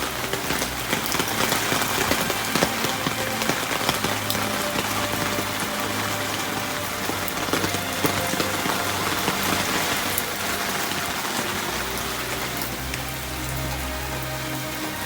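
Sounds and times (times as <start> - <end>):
drops pattering on hard surfaces: 0.0 - 11.0
heavy rain pouring: 0.0 - 15.0.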